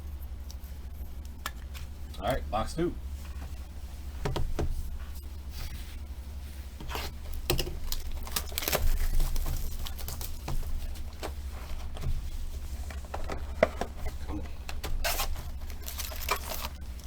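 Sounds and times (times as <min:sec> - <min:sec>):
handling clicks and rustles: 0:00.0 - 0:17.0
plastic wrapping crinkling and tearing: 0:06.8 - 0:12.0, 0:12.8 - 0:17.0.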